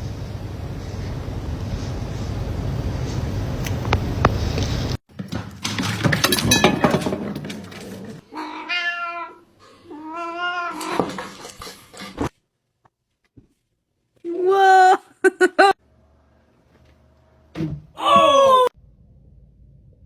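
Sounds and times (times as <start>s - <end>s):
clattering knocks: 5.1s - 8.2s
cat meowing: 8.3s - 11.0s.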